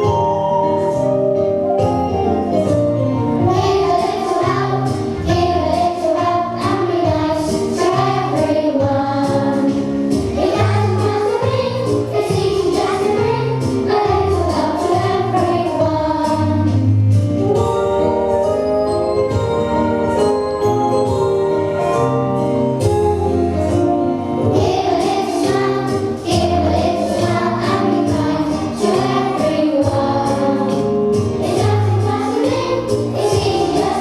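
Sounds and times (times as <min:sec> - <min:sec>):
instrumental backing track: 0:00.0 - 0:34.0
children singing: 0:03.5 - 0:16.8, 0:24.5 - 0:34.0.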